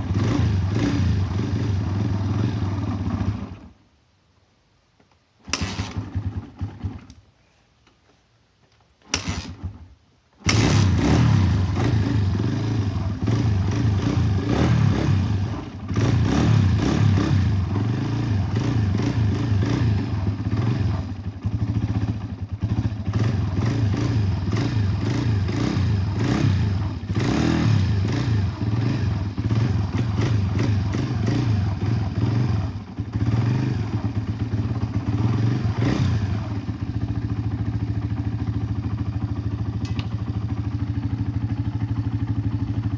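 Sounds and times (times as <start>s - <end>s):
dirt bike engine revving: 0.0s - 3.7s, 5.5s - 7.0s, 10.4s - 37.3s.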